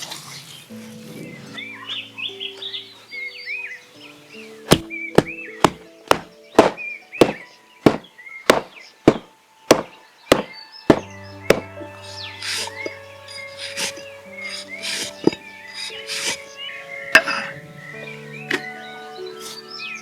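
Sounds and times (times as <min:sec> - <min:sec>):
background music: 0:00.0 - 0:20.0
birds chirping: 0:00.2 - 0:20.0
tool striking hemp: 0:04.7 - 0:11.8.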